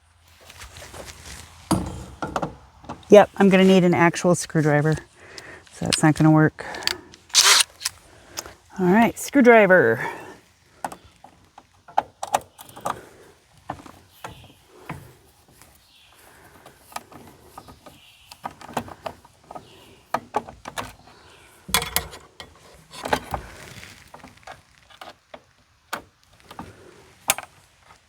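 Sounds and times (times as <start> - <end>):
screwdriver and small parts clatter: 4.8 - 8.5.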